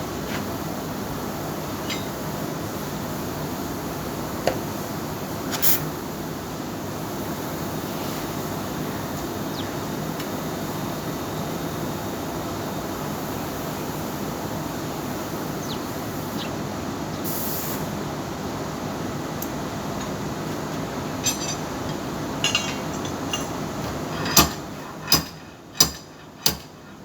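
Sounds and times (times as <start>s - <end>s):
short high hisses: 17.3s - 17.9s.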